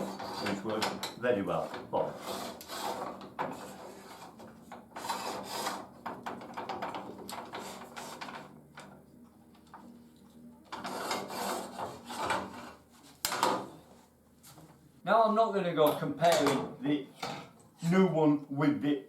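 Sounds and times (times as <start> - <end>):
tool parts rubbing and scraping: 0.0 - 5.9, 7.3 - 8.5, 10.7 - 14.6.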